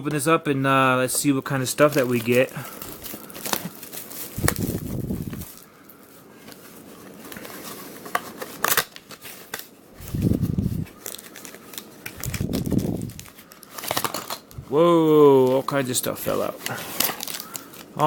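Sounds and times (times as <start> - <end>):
packaging crinkling and crackling: 1.1 - 18.0.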